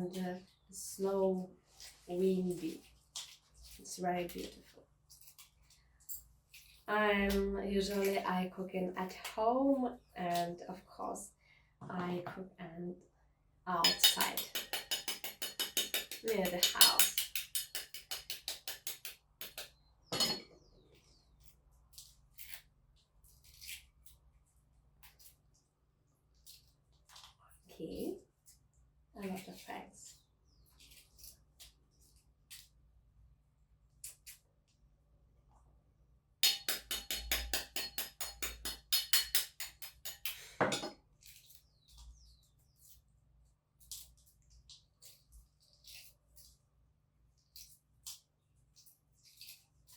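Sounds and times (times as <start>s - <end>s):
faint handling sounds: 1.4s - 6.9s
dishes and utensils clinking: 13.8s - 20.6s, 36.4s - 41.0s.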